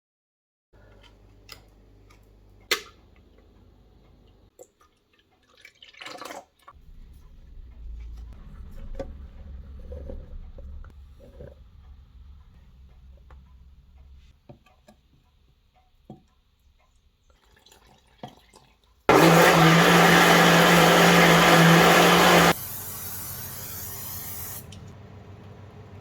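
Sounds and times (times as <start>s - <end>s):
low hum: 6.8s - 14.3s.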